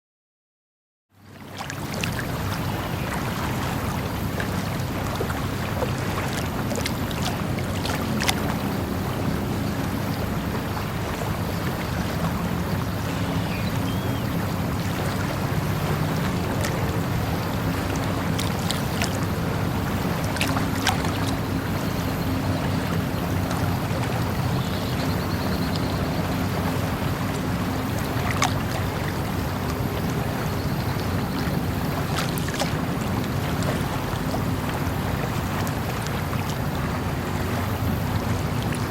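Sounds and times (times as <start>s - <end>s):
water rushing: 1.2s - 38.9s
sharp ticks or splashes: 13.2s - 31.0s.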